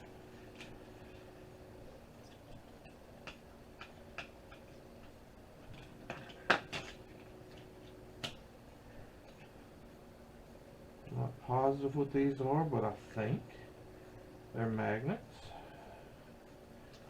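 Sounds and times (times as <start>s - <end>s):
small clicks and knocks of parts: 2.2s - 8.4s.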